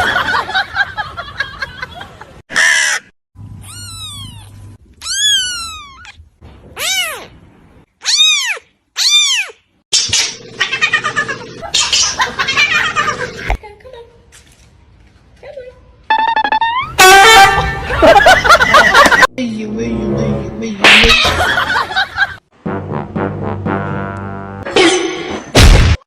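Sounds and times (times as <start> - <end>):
cat meowing: 3.6 - 6.2, 6.8 - 7.3, 8.0 - 9.6.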